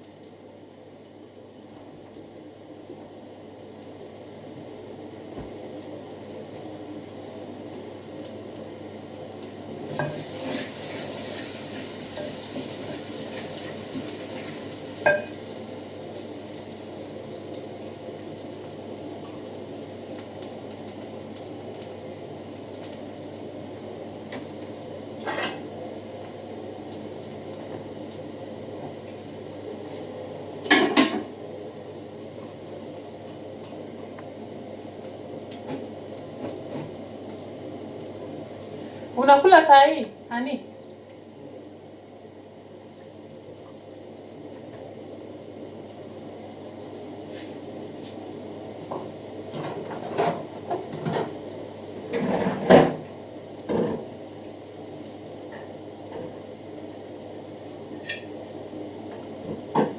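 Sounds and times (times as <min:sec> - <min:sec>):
metal pot and utensils clanking: 0:15.1 - 0:15.4.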